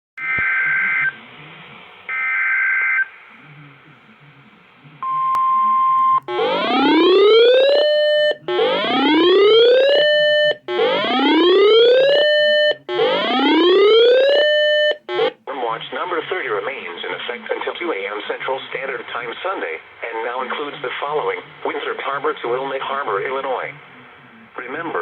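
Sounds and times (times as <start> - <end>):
steady warning alert tone: 6.0 - 15.4
electronic whoop alarm rising in pitch: 6.3 - 15.3.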